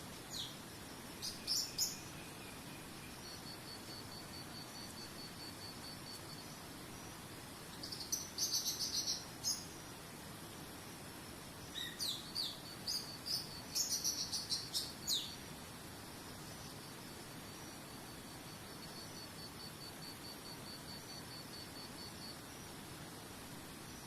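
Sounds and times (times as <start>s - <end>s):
small birds chirping: 0.1s - 10.0s, 11.5s - 15.5s.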